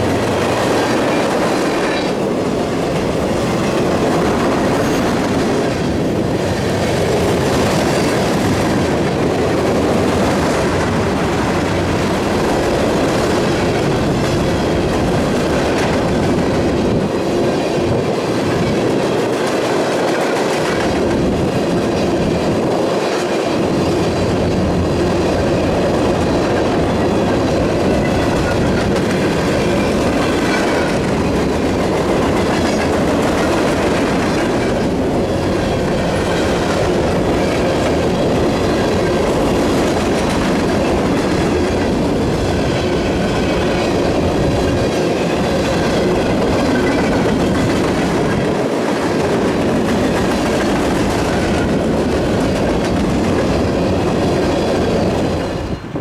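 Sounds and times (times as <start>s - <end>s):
train wheels rumbling on rail: 0.0s - 56.0s.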